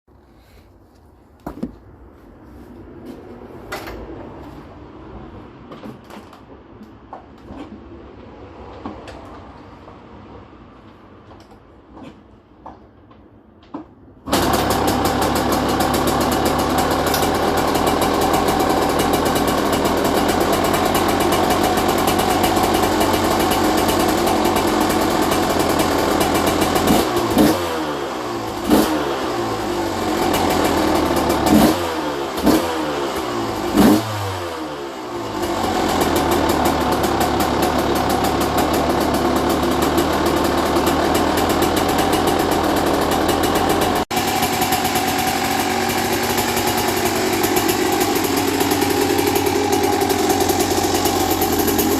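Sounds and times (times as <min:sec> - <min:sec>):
two-stroke engine running: 0:14.3 - 0:51.9.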